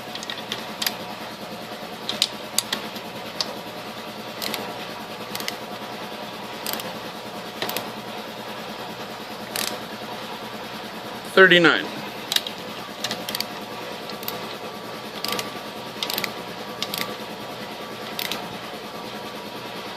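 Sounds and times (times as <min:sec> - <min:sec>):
steady background hum: 0:00.0 - 0:19.9
wrench clicking on metal: 0:04.4 - 0:04.6, 0:05.3 - 0:05.6, 0:06.6 - 0:06.9, 0:09.5 - 0:09.8, 0:12.3 - 0:13.5, 0:15.2 - 0:17.1, 0:18.2 - 0:18.4.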